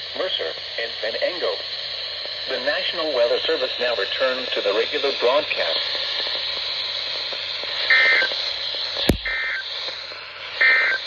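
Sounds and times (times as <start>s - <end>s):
radio static hiss: 0.0s - 10.1s
sharp click: 9.1s - 9.4s.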